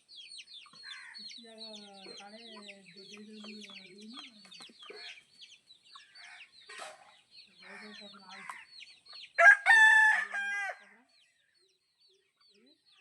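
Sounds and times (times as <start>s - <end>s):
chickens chirping: 0.0s - 13.0s
rooster crowing: 9.4s - 10.8s.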